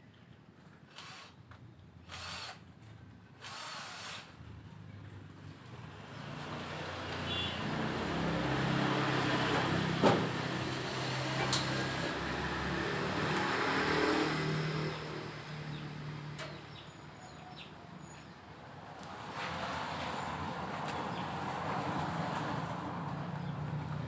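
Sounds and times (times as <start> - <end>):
vehicle engine passing: 6.0 - 16.4.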